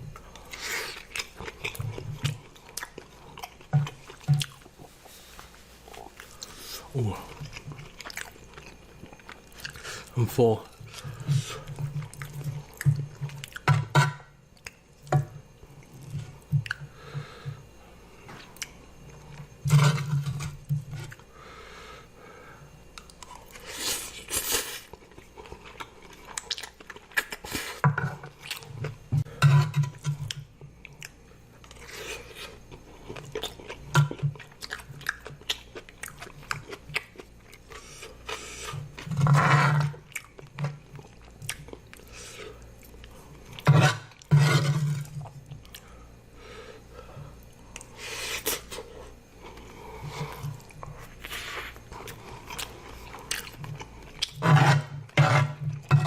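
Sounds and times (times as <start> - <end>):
wet chewing and crunching: 0.1 - 5.2, 5.8 - 10.2, 10.9 - 13.7, 23.0 - 29.1, 30.0 - 39.1, 39.9 - 44.3, 44.9 - 46.0, 47.4 - 56.0.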